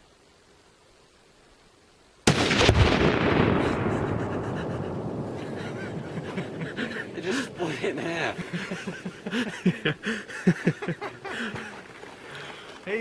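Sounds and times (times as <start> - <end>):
rifle shot: 2.3 - 7.9
explosion bang: 2.3 - 9.0
rolling rumble: 2.4 - 13.0.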